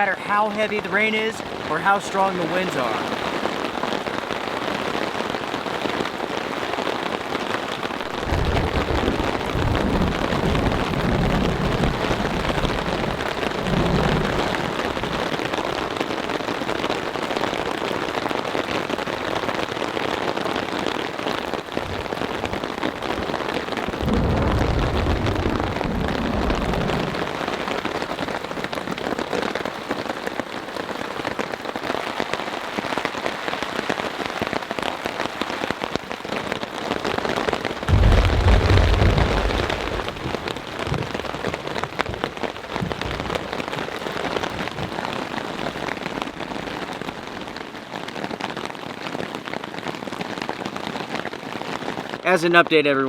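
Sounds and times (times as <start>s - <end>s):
heavy rain on a tarp: 0.0s - 53.0s
low rolls of thunder: 8.0s - 16.8s, 21.4s - 29.7s, 37.8s - 47.6s.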